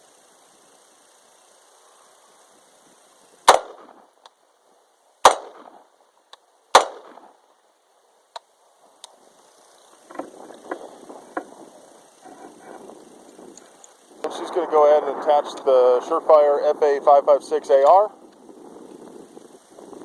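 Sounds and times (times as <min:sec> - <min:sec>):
rifle shots: 0:03.4 - 0:04.1, 0:05.2 - 0:05.8, 0:06.7 - 0:07.4
faint clattering: 0:09.4 - 0:14.1.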